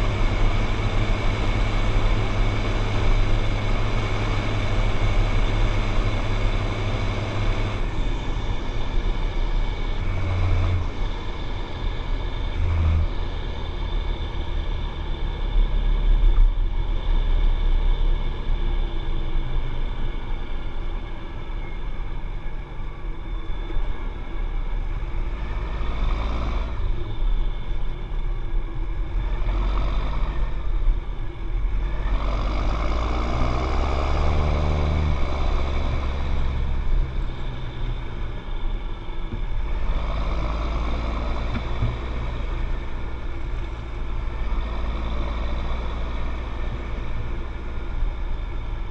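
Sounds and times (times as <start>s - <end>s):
tractor diesel engine rumbling: 0.0s - 48.9s.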